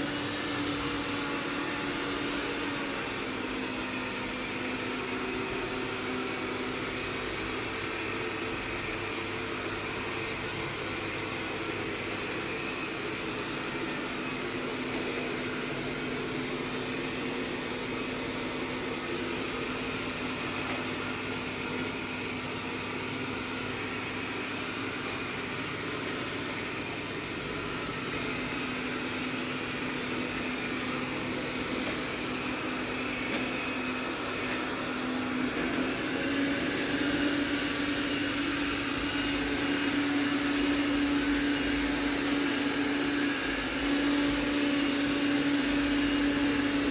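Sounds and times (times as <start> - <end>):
robot vacuum motor hum: 10.8 - 46.9.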